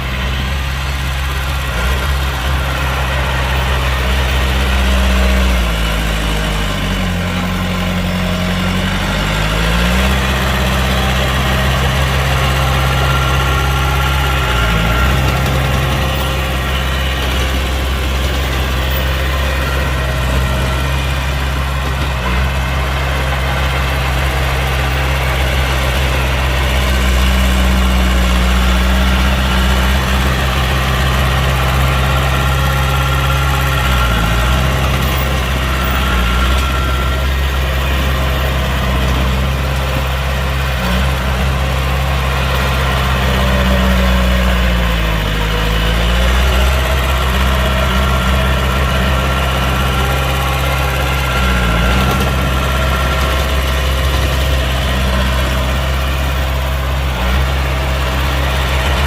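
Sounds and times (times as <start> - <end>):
heavy diesel engine humming: 0.0 - 59.0.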